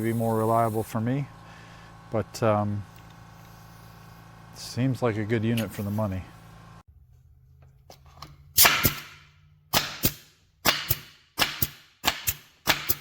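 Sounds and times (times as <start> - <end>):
pneumatic stapler firing: 8.6 - 13.0.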